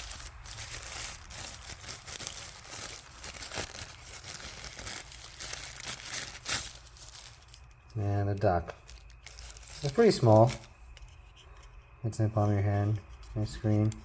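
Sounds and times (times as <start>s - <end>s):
plastic packaging crinkling: 0.0s - 10.8s.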